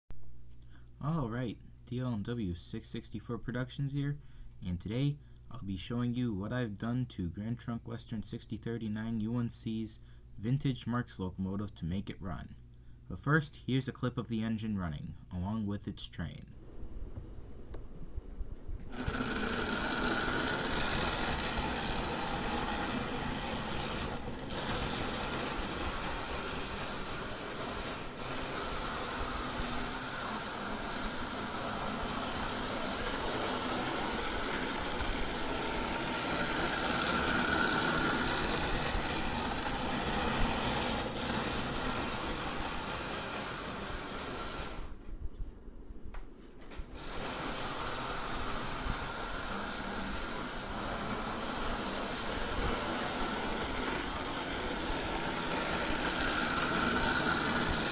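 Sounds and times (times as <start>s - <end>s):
wheels running on rails: 18.8s - 45.0s, 47.0s - 57.9s
toy train motor whirring: 18.9s - 45.0s, 46.9s - 57.9s.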